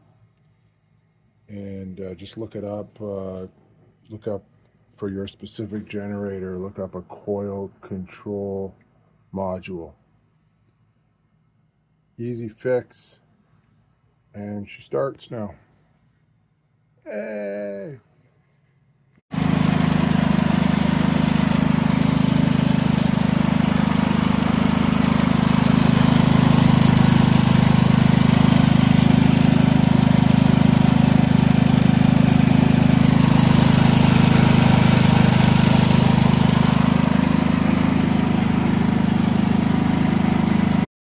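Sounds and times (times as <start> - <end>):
generator engine running: 19.3 - 40.9.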